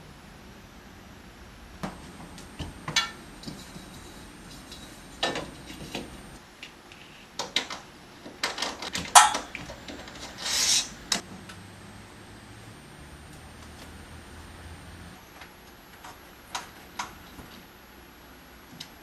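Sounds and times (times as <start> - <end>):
short scrape: 10.2 - 11.2.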